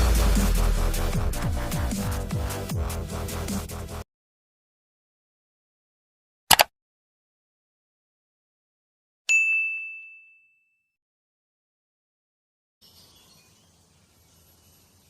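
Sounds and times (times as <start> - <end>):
bell ding: 9.3 - 11.0.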